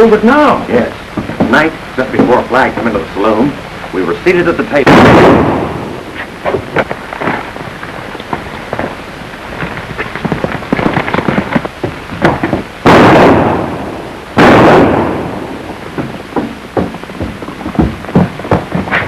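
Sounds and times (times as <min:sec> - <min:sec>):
knocks and scuffling: 0:00.8 - 0:04.0, 0:06.1 - 0:12.8, 0:15.6 - 0:19.0
gunshots: 0:04.7 - 0:09.0, 0:09.6 - 0:17.1.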